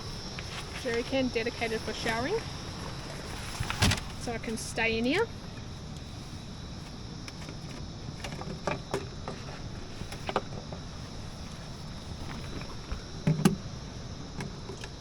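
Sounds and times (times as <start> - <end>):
outdoor background noise: 0.0 - 15.0
camping gear knocks and clicks: 7.3 - 10.9, 12.2 - 13.7.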